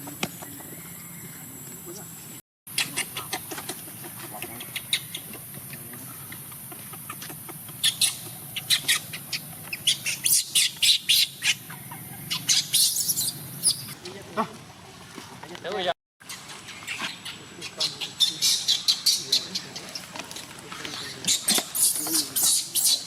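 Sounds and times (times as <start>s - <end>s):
high-pitched animal chirps: 7.1s - 14.0s.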